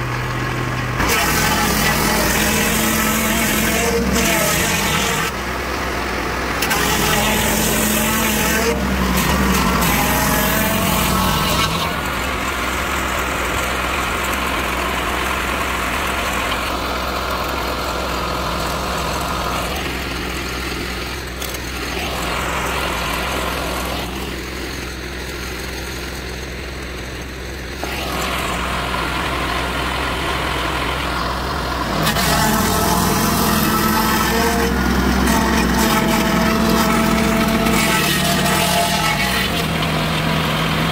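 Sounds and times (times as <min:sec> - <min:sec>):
sawmill engine milling a log: 0:00.0 - 0:40.9.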